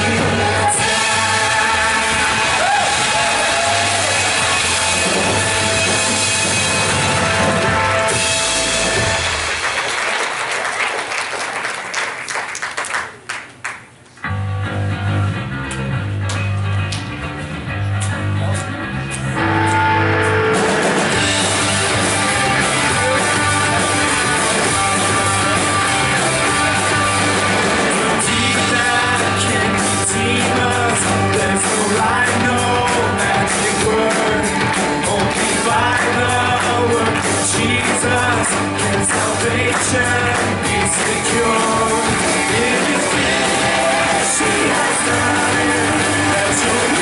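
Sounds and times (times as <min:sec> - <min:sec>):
person singing: 0:00.0 - 0:05.3, 0:22.7 - 0:47.0
rock band playing: 0:00.0 - 0:10.1, 0:14.2 - 0:47.0.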